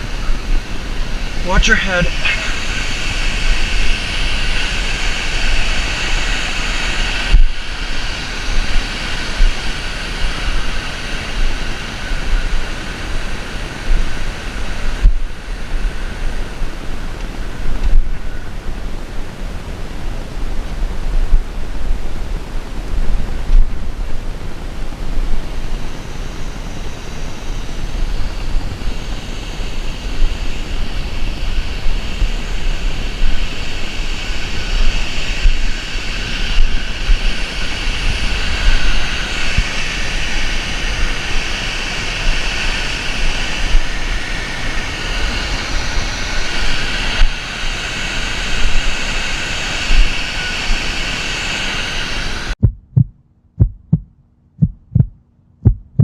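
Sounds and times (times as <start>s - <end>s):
wind rumbling on microphone: 0.0s - 56.0s
waterfall rushing: 1.1s - 3.6s
low thumps: 52.6s - 56.0s.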